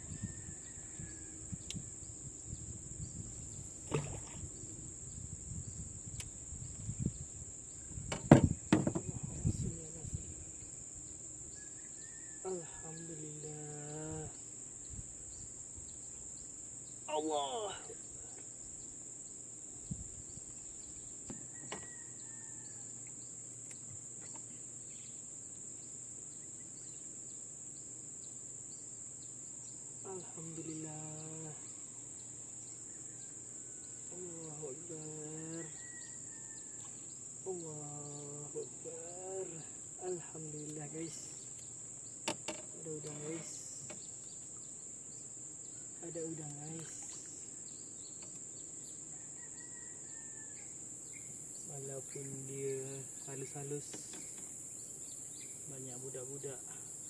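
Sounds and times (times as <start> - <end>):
faint chirping: 0.0 - 27.4, 28.2 - 57.0
insects droning: 0.0 - 57.0
handling knocks: 8.1 - 9.2
soft thump: 8.1 - 9.2
high-pitched insect drone: 34.1 - 41.7, 46.0 - 48.1.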